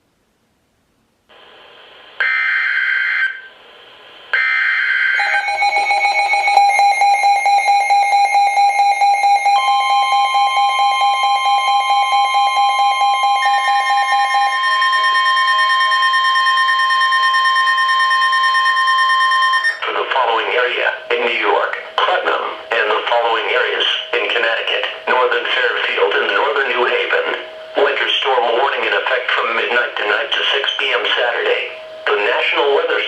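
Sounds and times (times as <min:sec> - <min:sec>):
pulsing electronic alert tone: 0:05.2 - 0:19.8
higher steady tone: 0:05.2 - 0:24.2.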